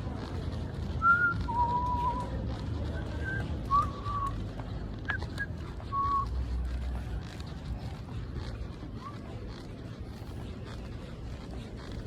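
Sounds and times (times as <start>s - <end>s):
person whistling a slow tune: 1.0s - 2.3s.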